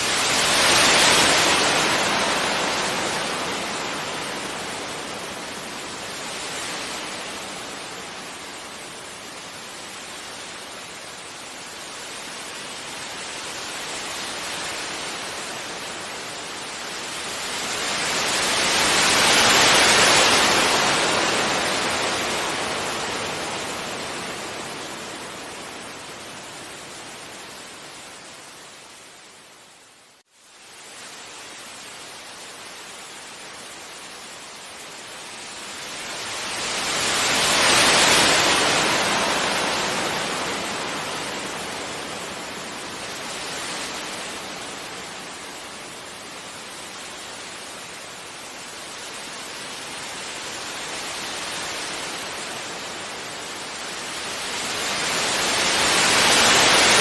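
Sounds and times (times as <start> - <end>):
large wave breaking: 0.0 - 8.3, 17.2 - 26.4, 35.7 - 47.2, 49.4 - 57.0
sea waves washing onto beach: 0.0 - 29.0, 30.6 - 57.0.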